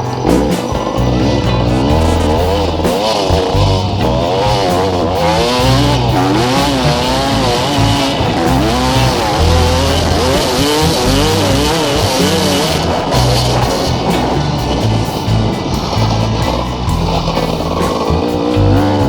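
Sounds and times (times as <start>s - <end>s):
background music with bass and lead: 0.0s - 19.0s.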